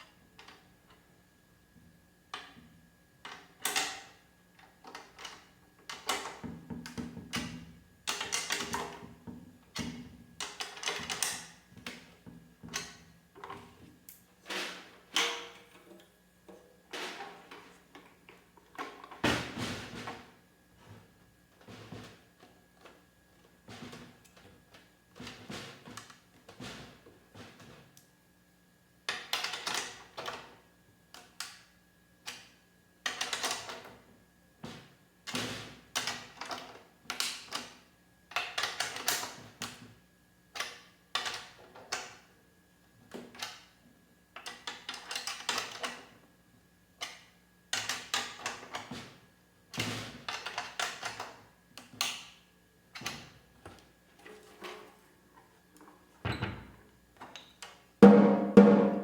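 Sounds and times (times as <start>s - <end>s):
snare drum struck and ringing: 58.0s - 59.0s.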